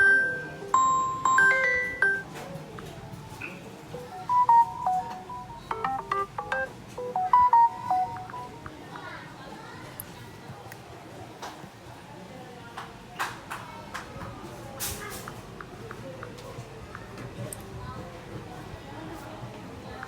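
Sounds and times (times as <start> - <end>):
mallet instrument melody: 0.8 - 2.2, 4.0 - 8.6.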